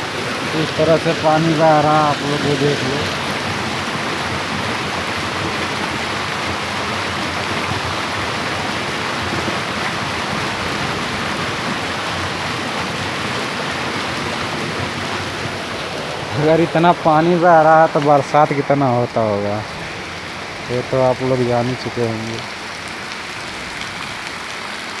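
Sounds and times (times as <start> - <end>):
rushing water flow: 0.0 - 25.0.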